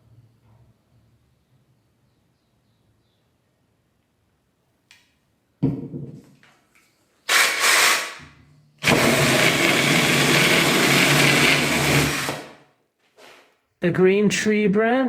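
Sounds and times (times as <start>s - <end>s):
drill-powered chainsaw running: 7.3s - 8.2s, 8.8s - 12.6s.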